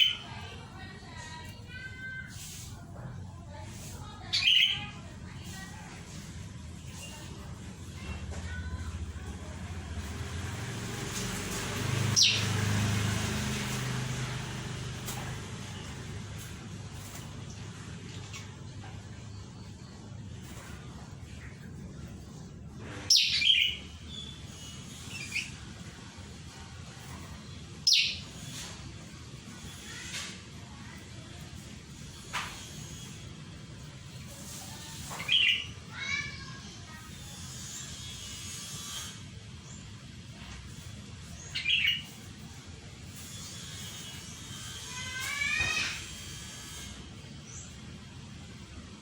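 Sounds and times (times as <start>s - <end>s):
bird chirping high thin calls: 4.2s - 5.0s, 12.0s - 12.6s, 23.1s - 25.6s, 27.8s - 28.6s, 41.3s - 42.2s.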